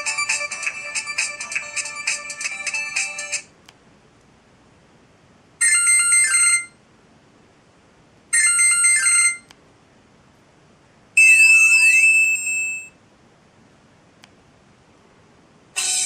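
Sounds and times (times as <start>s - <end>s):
mobile phone ringtone chimes: 11.2s - 12.9s.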